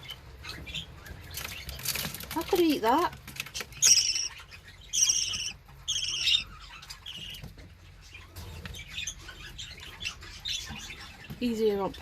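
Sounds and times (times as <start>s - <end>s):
budgerigars chirping and chattering: 0.0s - 12.0s
loud warbling bird calls: 3.5s - 7.4s.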